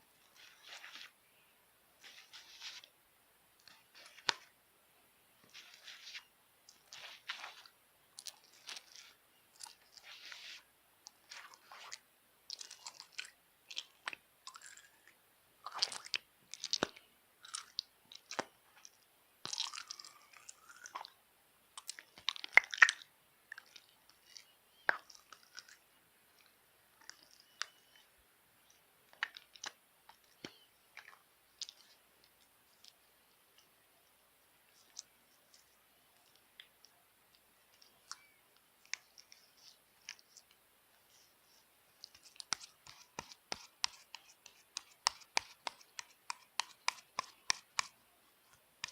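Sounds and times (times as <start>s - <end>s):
slime crackling and popping: 21.8s - 24.2s.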